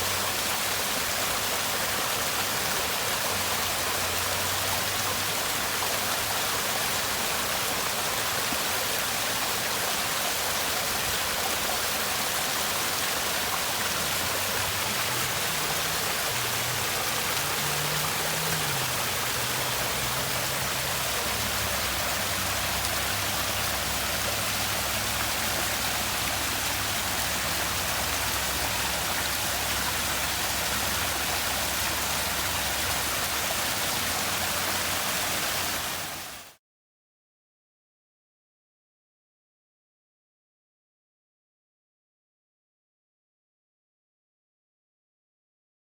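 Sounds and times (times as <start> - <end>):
water splashing and running: 0.0 - 36.5.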